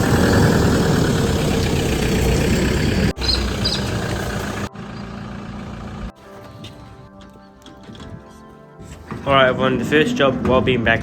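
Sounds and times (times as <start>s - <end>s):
motor engine running: 0.0s - 6.1s.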